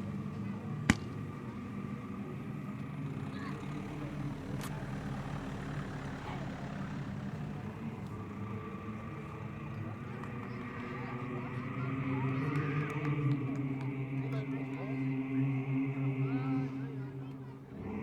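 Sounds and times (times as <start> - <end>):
low engine-like hum: 0.0 - 18.0
faint sharp crack: 0.8 - 1.6.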